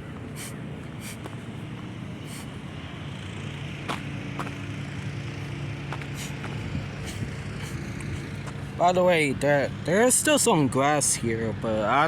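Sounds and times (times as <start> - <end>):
engine humming: 0.0 - 12.0.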